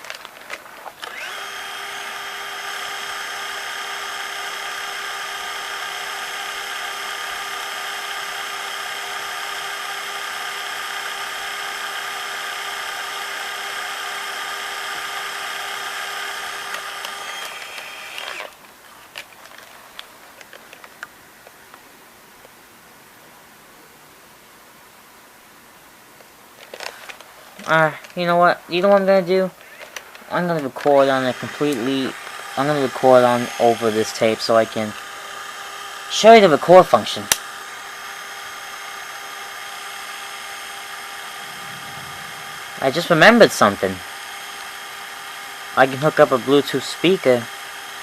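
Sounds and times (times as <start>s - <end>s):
tape motor whine: 0.4s - 18.6s, 28.7s - 48.0s.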